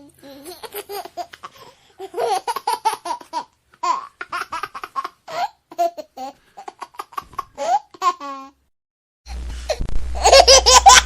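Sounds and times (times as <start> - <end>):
baby laughing: 0.3 - 8.6, 10.2 - 11.0.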